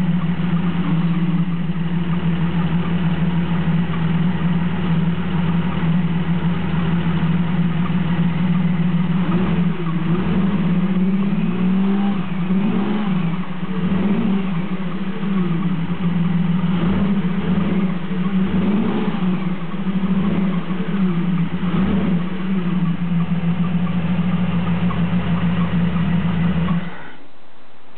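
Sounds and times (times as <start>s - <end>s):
car engine idling and revving: 0.0s - 27.9s.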